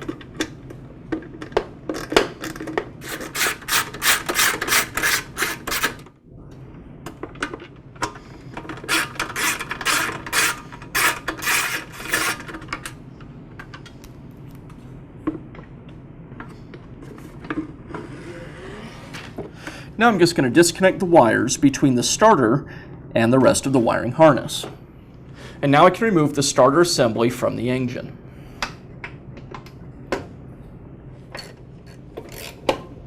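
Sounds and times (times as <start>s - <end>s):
ratchet wrench clicking: 3.0s - 6.0s.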